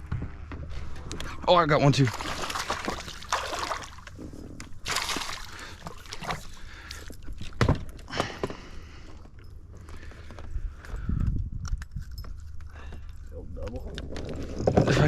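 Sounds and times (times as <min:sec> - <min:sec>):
water splashing and sloshing: 0:00.0 - 0:08.1.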